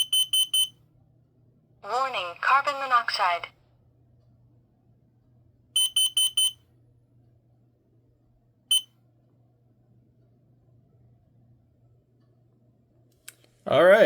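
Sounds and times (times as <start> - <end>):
shrill alarm beeps: 0.0 - 0.8, 5.8 - 6.6.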